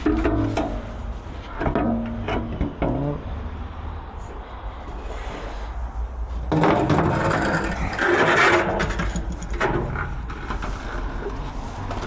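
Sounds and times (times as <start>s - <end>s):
metal radiator scraping and clattering: 0.0s - 3.2s, 6.3s - 12.0s.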